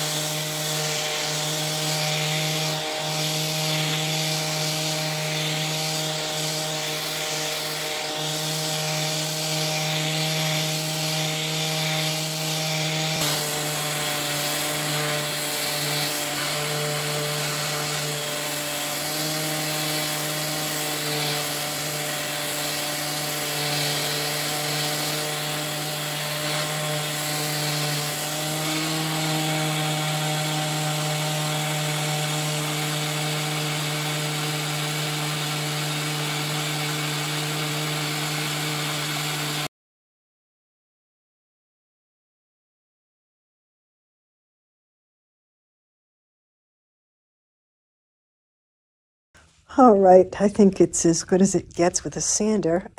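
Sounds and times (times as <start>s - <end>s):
electric sander on wood: 0.0s - 39.7s.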